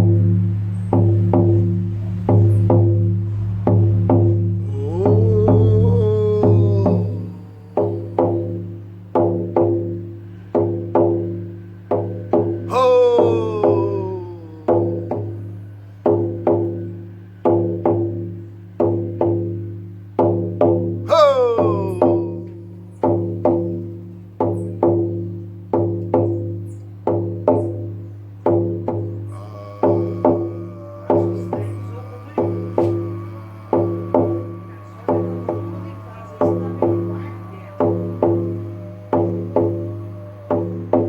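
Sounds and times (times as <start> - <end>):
frame drum booming beat: 28.6 - 41.0.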